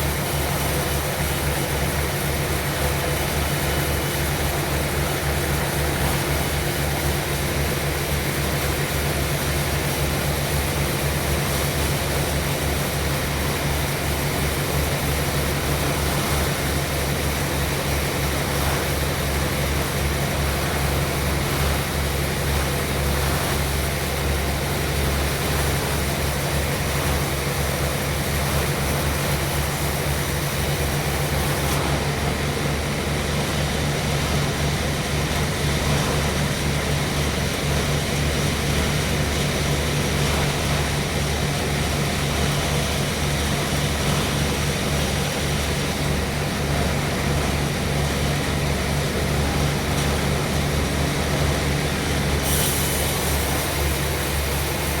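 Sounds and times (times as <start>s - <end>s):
sawmill engine drone: 0.0s - 55.0s.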